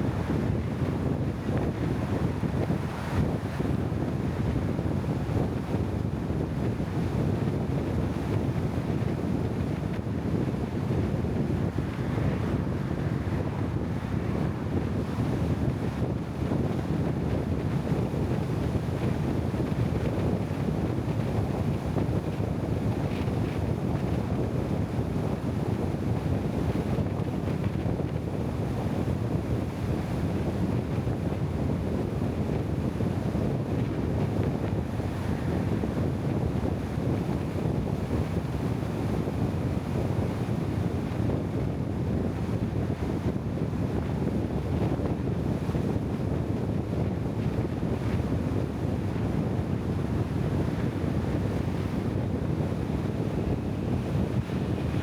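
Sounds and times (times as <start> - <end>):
steady low rumbling noise: 51.0 - 55.0.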